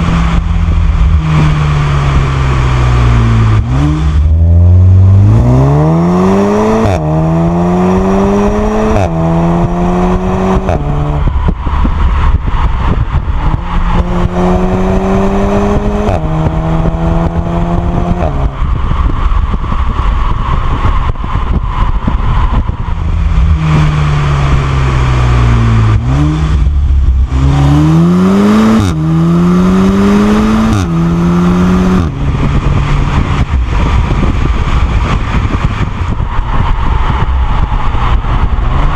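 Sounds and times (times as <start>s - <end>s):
car engine accelerating with upshifts: 0.0s - 38.9s.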